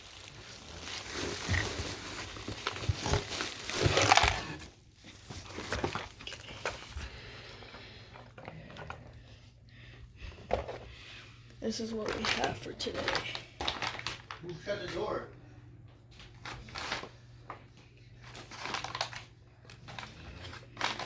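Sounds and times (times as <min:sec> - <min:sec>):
packing material rustling: 0:00.0 - 0:07.5, 0:11.9 - 0:14.4, 0:18.2 - 0:21.0.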